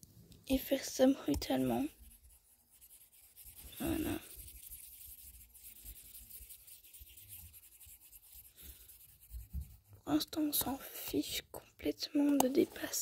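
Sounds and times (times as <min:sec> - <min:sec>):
scratching on touchscreen: 0:01.0 - 0:10.7.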